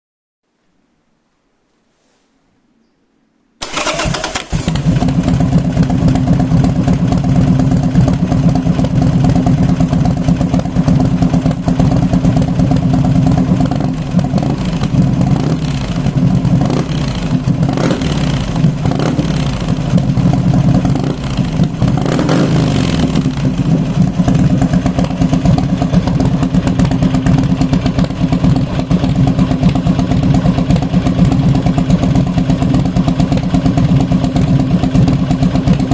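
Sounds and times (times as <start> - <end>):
motorcycle engine idling and revving: 3.6 - 35.9.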